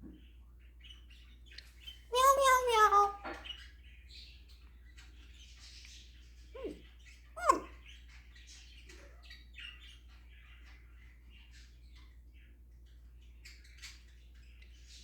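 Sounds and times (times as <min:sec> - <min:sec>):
parrot calls: 0:02.1 - 0:03.6, 0:07.4 - 0:07.9.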